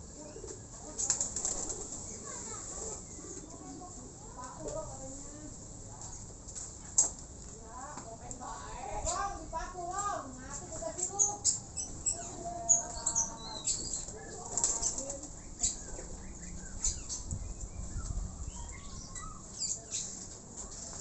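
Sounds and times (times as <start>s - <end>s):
birds chirping: 0.0s - 7.2s, 8.6s - 21.0s
pigeon wings flapping: 1.0s - 2.0s.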